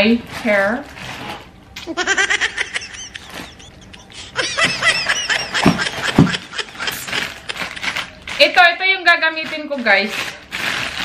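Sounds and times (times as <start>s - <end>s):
person laughing: 1.8s - 8.1s.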